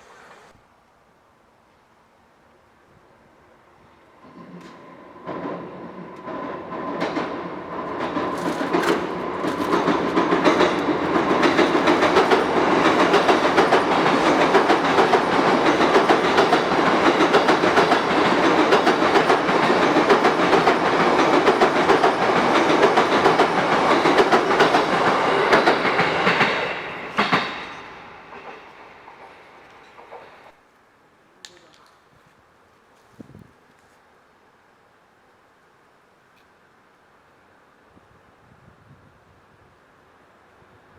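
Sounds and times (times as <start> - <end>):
train wheels clattering: 4.3 - 30.5.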